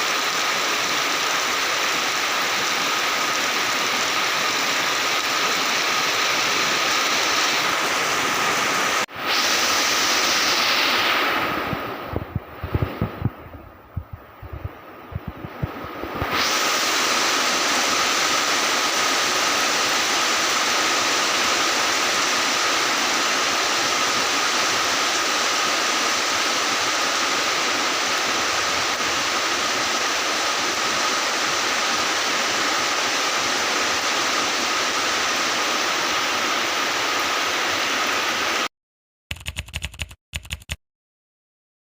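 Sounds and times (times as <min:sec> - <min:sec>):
heavy rain hiss: 0:00.0 - 0:38.7
sharp clicks: 0:39.3 - 0:40.8.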